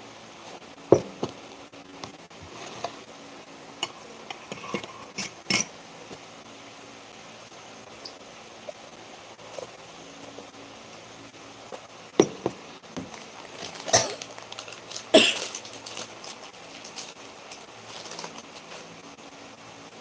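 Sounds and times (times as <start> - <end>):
woman coughing: 15.1 - 15.5.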